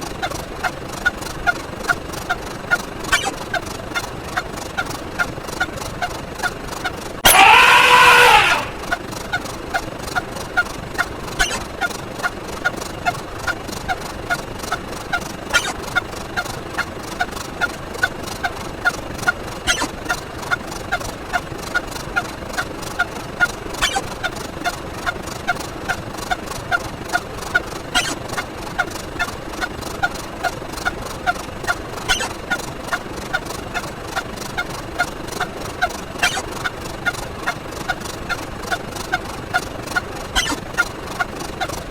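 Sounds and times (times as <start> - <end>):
bird-call-like sound effect: 2.7 - 4.5, 11.0 - 12.0, 15.5 - 16.0, 19.7 - 20.2, 23.8 - 24.4, 27.9 - 28.4, 31.7 - 32.6, 35.8 - 37.2, 40.4 - 40.9.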